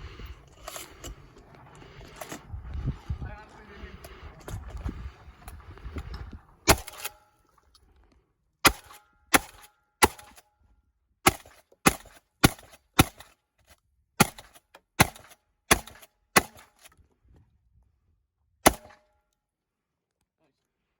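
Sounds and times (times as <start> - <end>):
shotgun shots: 6.7 - 7.2, 8.6 - 10.4, 11.2 - 13.3, 14.2 - 16.7, 18.6 - 19.0.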